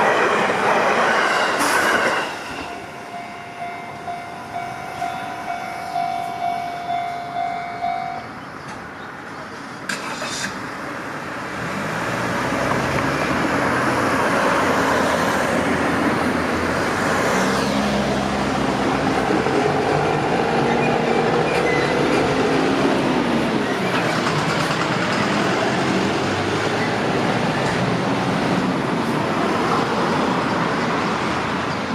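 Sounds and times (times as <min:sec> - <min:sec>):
road vehicle engine and tyres: 0:00.0 - 0:31.9
level crossing alarm ringing: 0:02.6 - 0:08.4.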